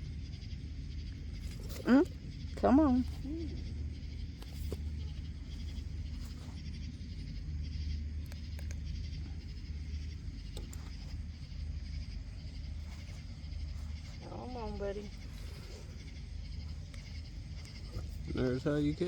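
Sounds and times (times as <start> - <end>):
low rumble: 0.0 - 18.8
high pulsing chirp chorus: 0.0 - 19.0
faint clicks and knocks: 8.1 - 11.6.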